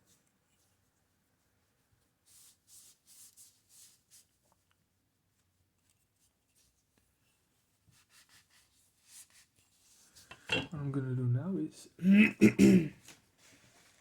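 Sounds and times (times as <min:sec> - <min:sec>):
faint rubbing on painted panel: 0:00.5 - 0:10.4.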